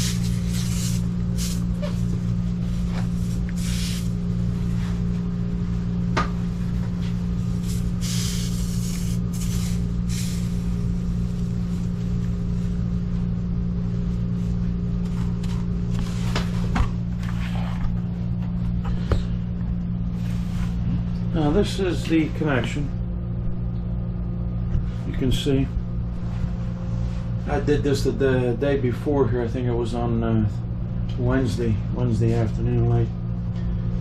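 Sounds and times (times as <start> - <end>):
short bursts of hissing: 0.0 - 1.7, 7.6 - 10.7
low mechanical hum: 0.0 - 34.0.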